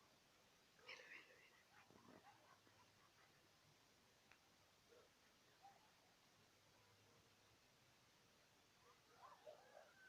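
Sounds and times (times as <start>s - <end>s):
faint soft sounds: 0.0s - 10.0s.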